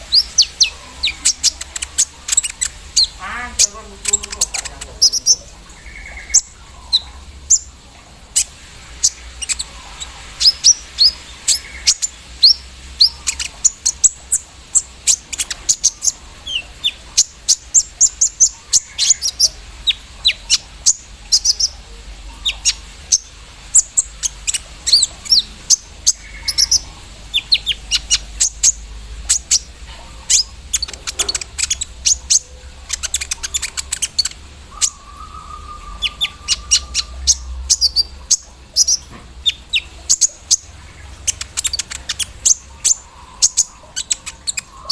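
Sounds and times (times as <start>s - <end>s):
bird singing high chirps: 0.0s - 44.9s.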